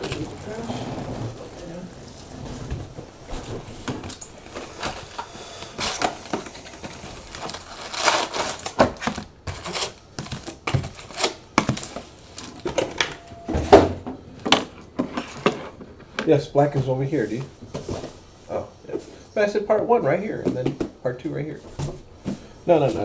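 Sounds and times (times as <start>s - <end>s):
cardboard and wrapper rustling: 0.0s - 14.0s.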